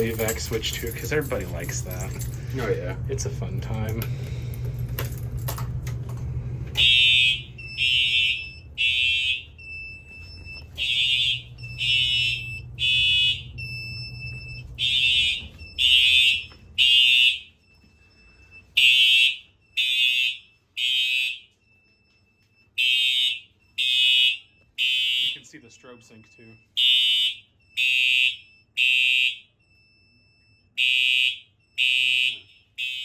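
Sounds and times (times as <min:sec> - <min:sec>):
fire alarm horn blasts: 0:06.7 - 0:33.0.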